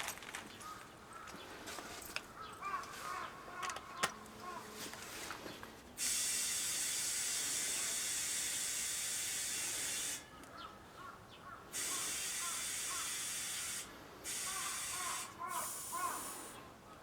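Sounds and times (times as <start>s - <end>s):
compressed air hissing: 6.0s - 10.4s, 11.7s - 16.7s.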